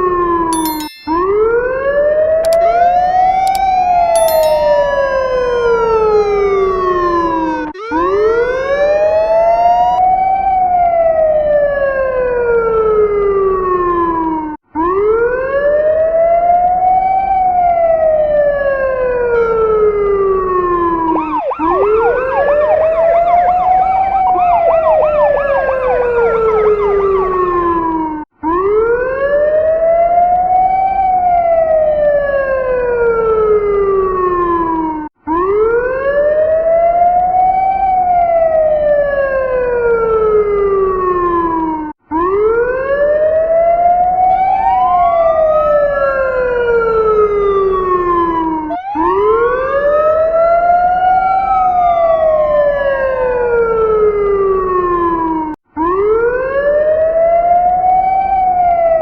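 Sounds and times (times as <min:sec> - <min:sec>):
emergency vehicle siren wailing: 0:00.0 - 0:59.0
quickly sweeping siren tones: 0:20.9 - 0:28.2, 0:44.2 - 0:46.8, 0:47.6 - 0:50.8.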